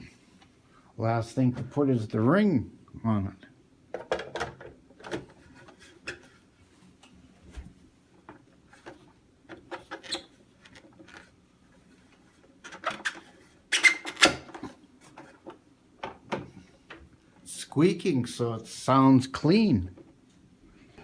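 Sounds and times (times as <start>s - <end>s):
plastic scraping and squeaking: 8.8s - 11.4s, 12.6s - 15.6s.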